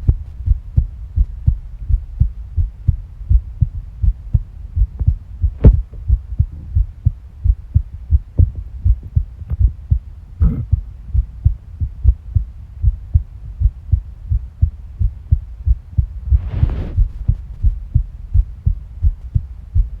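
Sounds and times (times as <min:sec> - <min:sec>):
heartbeat thumps: 0:00.0 - 0:20.0
short swishing noise: 0:16.2 - 0:17.4.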